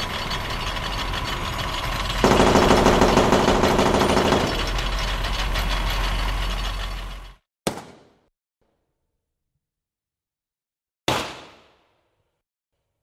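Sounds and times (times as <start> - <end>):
heavy engine running: 0.0 - 7.4.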